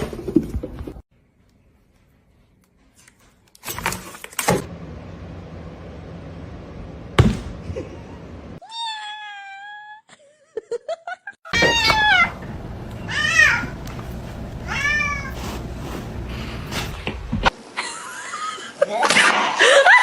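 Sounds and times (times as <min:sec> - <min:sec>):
cat meowing: 0:13.0 - 0:13.8, 0:14.6 - 0:15.4.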